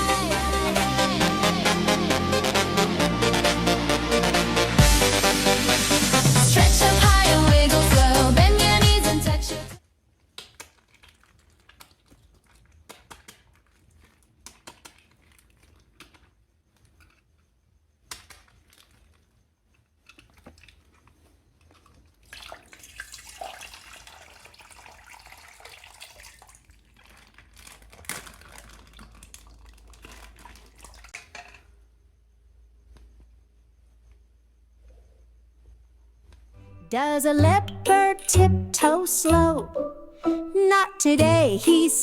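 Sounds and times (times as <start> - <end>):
water running and splashing: 22.3 - 27.5
plastic bags crinkling: 26.6 - 31.6.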